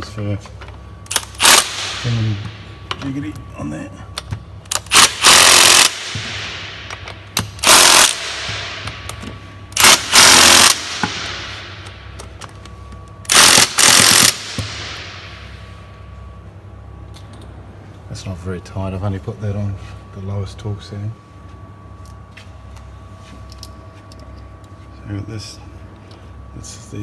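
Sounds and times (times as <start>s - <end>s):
impact wrench hammering: 1.1s - 2.2s, 4.7s - 12.2s, 13.3s - 15.5s.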